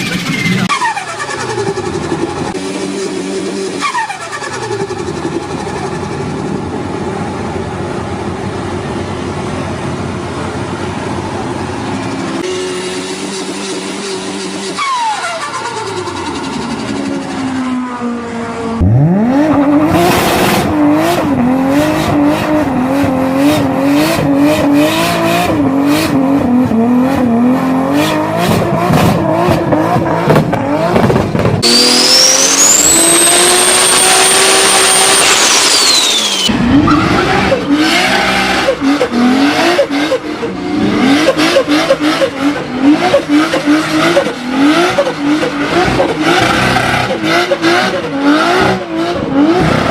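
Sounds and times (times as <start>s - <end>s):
car engines revving: 0.0s - 49.9s
high turbo whistle: 31.6s - 38.5s.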